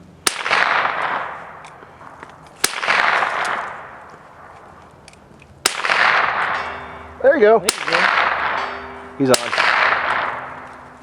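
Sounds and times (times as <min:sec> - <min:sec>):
pistol shots with echo: 0:00.2 - 0:04.8, 0:05.6 - 0:11.0.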